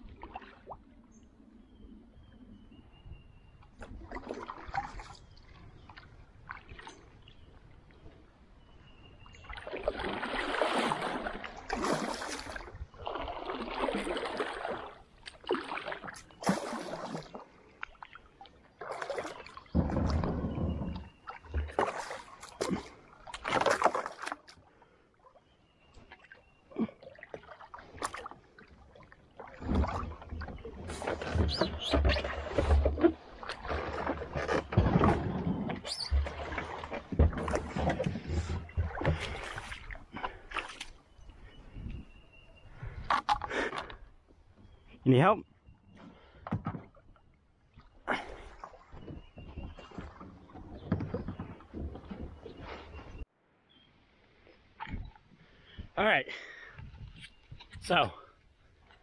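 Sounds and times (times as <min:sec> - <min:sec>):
paddle strokes splashing water: 0:03.8 - 0:07.4, 0:09.4 - 0:41.6, 0:46.0 - 0:53.2.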